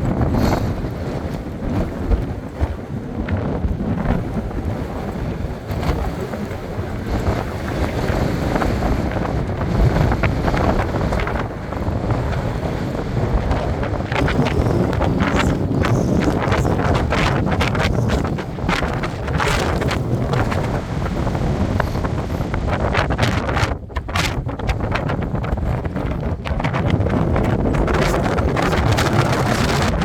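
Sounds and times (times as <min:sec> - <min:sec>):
wind buffeting microphone: 0:00.0 - 0:30.0.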